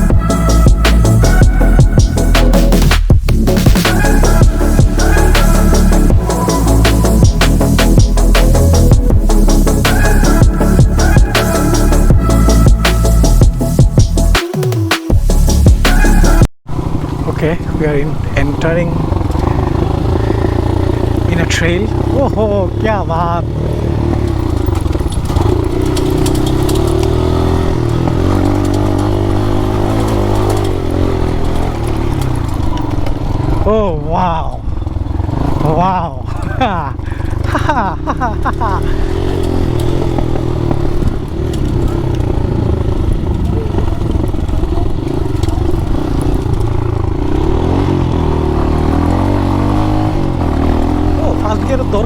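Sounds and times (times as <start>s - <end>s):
dirt bike engine: 0.0s - 52.0s
bike clattering and rattling: 23.5s - 33.7s, 36.3s - 52.0s.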